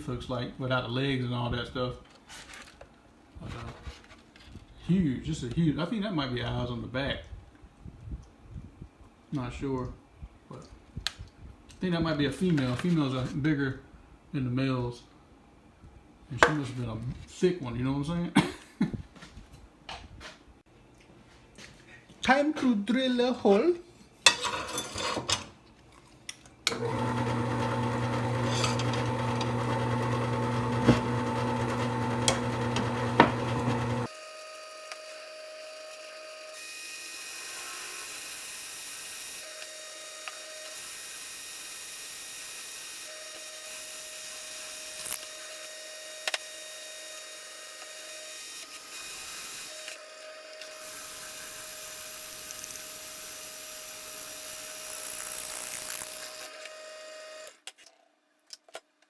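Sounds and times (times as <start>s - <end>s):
electric drill drilling steel: 26.7s - 57.6s.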